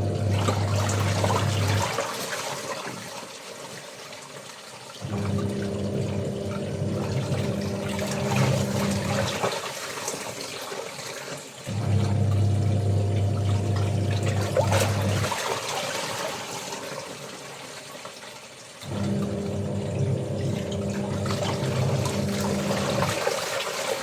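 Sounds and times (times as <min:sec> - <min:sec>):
low mechanical hum: 0:00.0 - 0:01.8, 0:05.0 - 0:09.3, 0:11.7 - 0:15.3, 0:18.8 - 0:23.2
water sloshing and pouring: 0:00.0 - 0:24.0.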